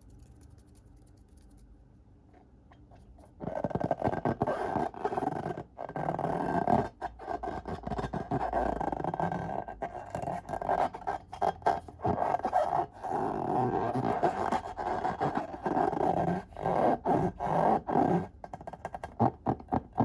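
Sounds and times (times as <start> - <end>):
faint low hum: 0.0 - 3.5.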